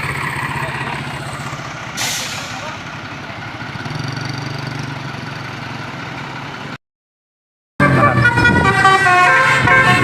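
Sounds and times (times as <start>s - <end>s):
bus engine running: 0.0s - 6.8s
multi-tone bus horn tune: 7.8s - 10.0s.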